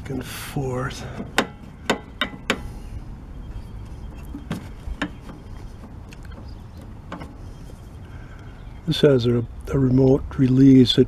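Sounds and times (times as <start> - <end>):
low steady rumble: 0.0 - 11.0.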